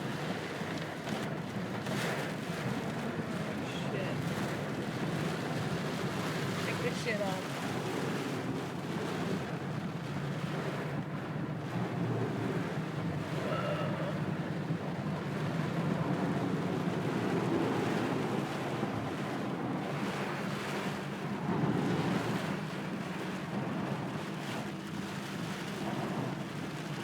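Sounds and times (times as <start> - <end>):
heavy rain on a car: 0.1 - 13.4, 22.6 - 27.0.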